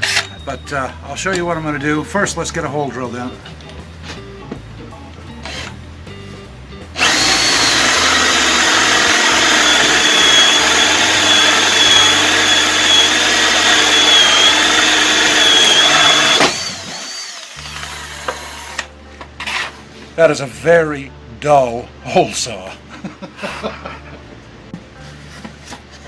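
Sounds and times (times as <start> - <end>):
electric drill with hole saw whining: 5.4 - 5.7, 7.0 - 18.9.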